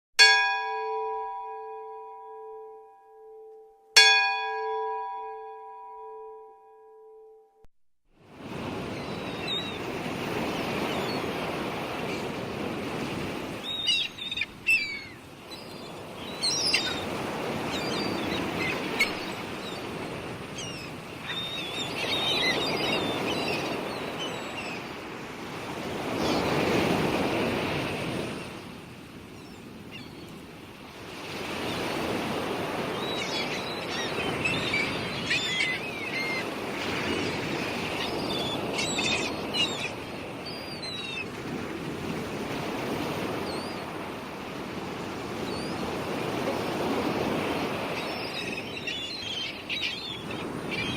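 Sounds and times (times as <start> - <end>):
sea surf washing in: 8.2 - 50.9
birds chirping: 8.7 - 28.6, 31.4 - 41.4, 45.3 - 50.9.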